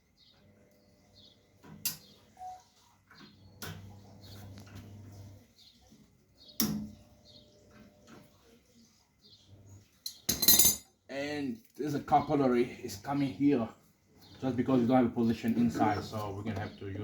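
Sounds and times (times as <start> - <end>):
faint high chirps: 2.2 - 2.9.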